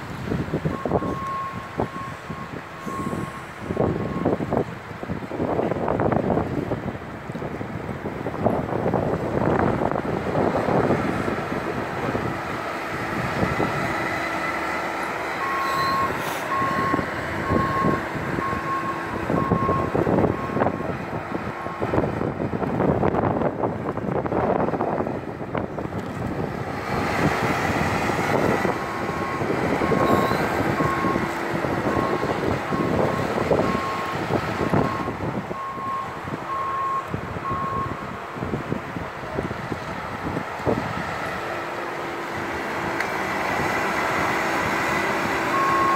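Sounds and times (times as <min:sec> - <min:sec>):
vehicle rumble: 0:00.0 - 0:45.9
vehicle reversing alarm beeping: 0:00.6 - 0:04.5, 0:13.4 - 0:21.0, 0:21.6 - 0:22.0, 0:28.4 - 0:38.2, 0:45.4 - 0:45.9.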